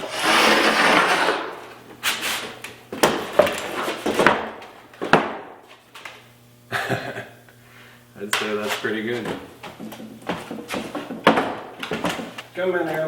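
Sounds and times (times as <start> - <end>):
wooden table scraping: 0.0 - 2.4
wooden knocks and clunks: 9.2 - 12.4.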